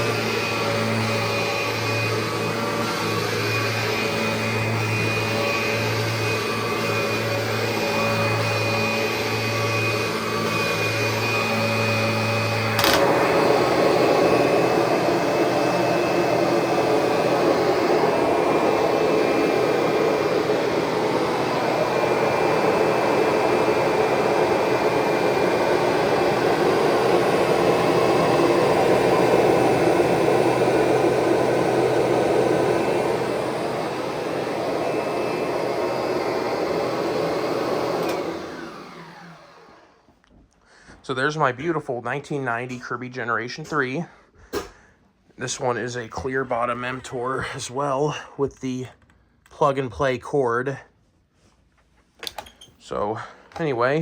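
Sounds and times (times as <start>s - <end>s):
vacuum cleaner running on carpet: 0.0s - 40.1s.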